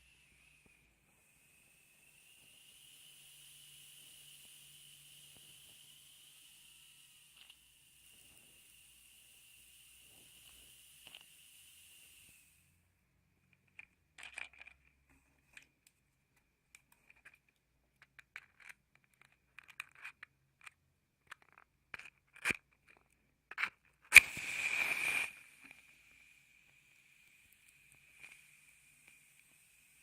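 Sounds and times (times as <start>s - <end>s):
matches clicking and rattling: 13.7s - 14.9s, 16.7s - 25.2s
match struck and flaring: 24.0s - 26.2s.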